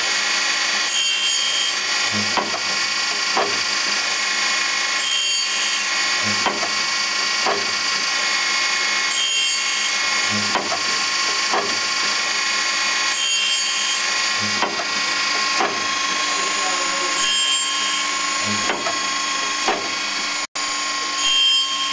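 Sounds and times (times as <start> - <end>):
mechanical whir: 1.7 - 21.8
sharp mechanical knocks: 2.1 - 4.1, 6.2 - 8.1, 10.2 - 12.4, 14.4 - 16.2, 18.4 - 20.3.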